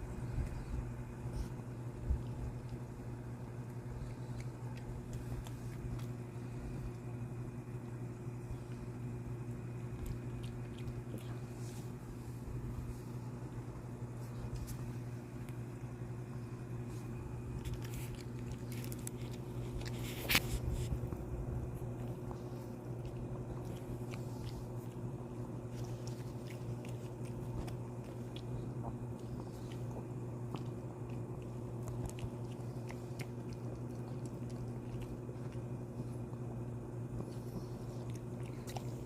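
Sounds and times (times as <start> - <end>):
dog chewing wetly: 0.0 - 39.0.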